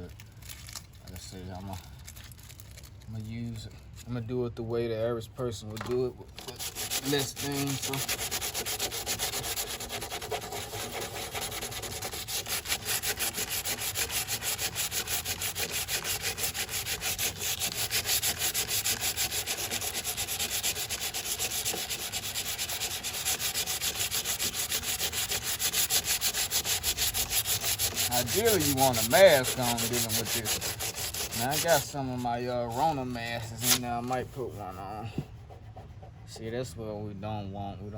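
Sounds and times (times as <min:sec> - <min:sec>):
sandpaper scrubbing body filler: 0:06.6 - 0:36.6.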